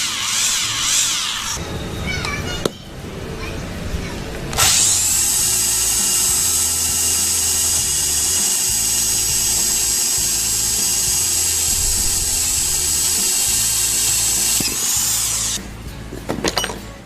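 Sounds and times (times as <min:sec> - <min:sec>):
drill motor whining: 0:00.0 - 0:02.0, 0:04.4 - 0:15.6.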